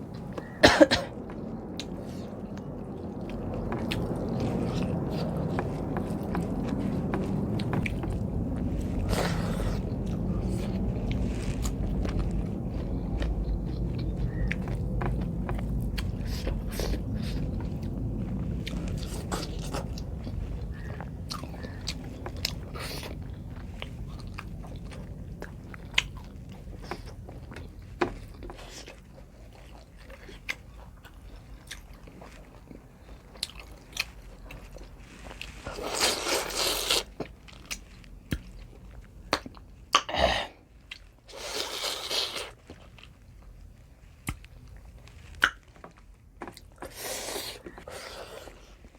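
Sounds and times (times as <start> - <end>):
person chewing food: 0.0 - 48.9
mouth clicks and smacks: 45.4 - 45.7.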